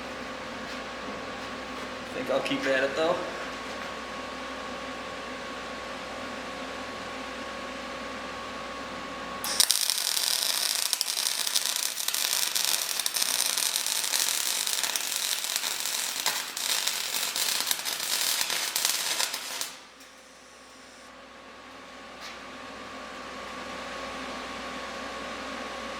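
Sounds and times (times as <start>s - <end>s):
welding arc crackling: 9.4s - 21.1s.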